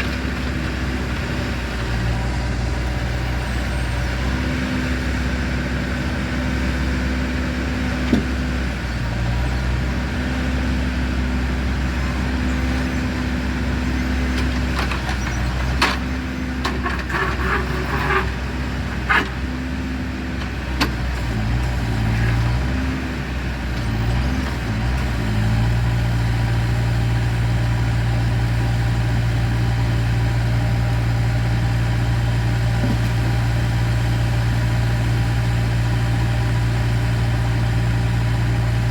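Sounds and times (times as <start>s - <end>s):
vehicle engine idling: 0.0s - 38.9s.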